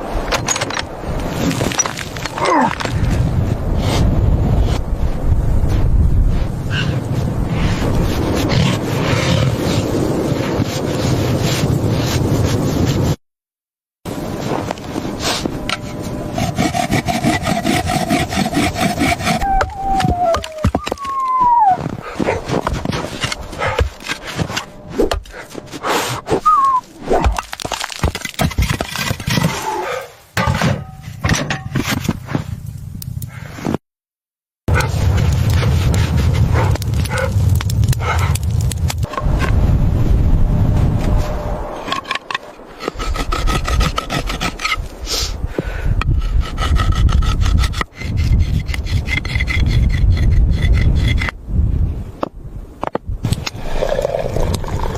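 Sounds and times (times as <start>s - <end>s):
cracks knocks and scrapes: 0.3s - 3.2s, 18.9s - 25.8s, 27.2s - 29.7s, 30.4s - 32.5s
rasping scraping strokes: 14.3s - 19.7s, 41.1s - 45.4s, 46.0s - 51.4s
falling whistle-like tone: 19.4s - 21.8s, 26.4s - 26.9s.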